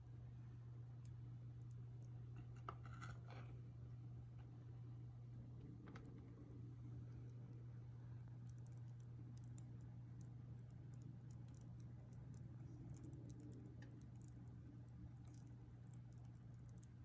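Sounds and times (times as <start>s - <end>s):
aquarium filter humming: 3.5s - 17.0s.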